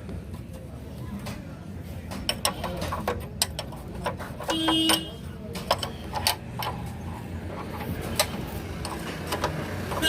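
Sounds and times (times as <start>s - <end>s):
wrench metal clicks and taps: 2.1s - 6.8s, 7.6s - 10.0s.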